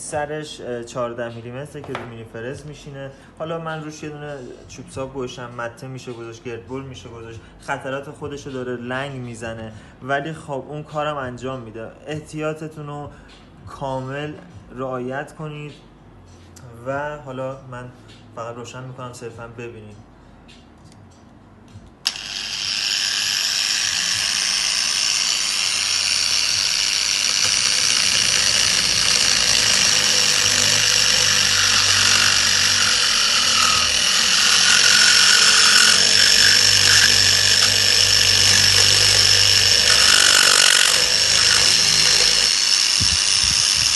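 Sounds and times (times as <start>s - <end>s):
angle grinder high-pitched whine: 22.0s - 43.9s.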